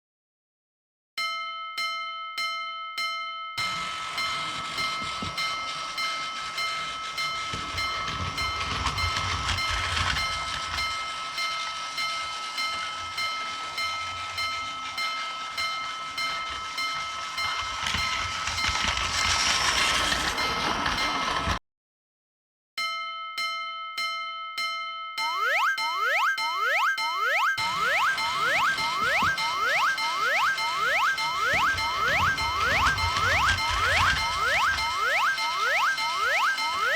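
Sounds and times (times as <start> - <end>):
level crossing alarm dinging: 25.2 - 36.9
train rushing past: 27.6 - 36.9.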